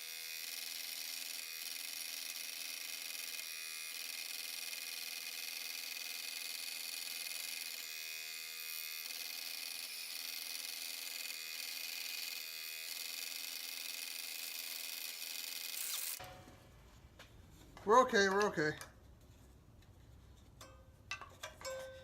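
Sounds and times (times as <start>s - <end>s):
power saw cutting wood: 0.0s - 16.2s.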